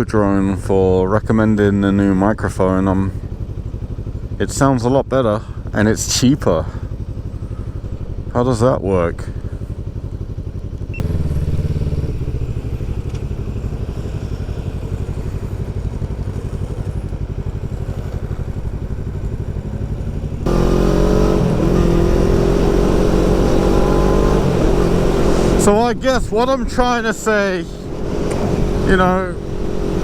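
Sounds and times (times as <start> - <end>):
motorcycle engine accelerating: 3.0 - 4.6, 5.4 - 30.0.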